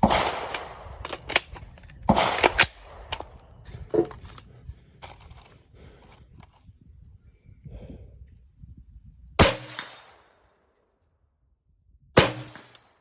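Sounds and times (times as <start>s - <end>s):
gunshots: 0.0s - 1.4s, 2.0s - 3.1s.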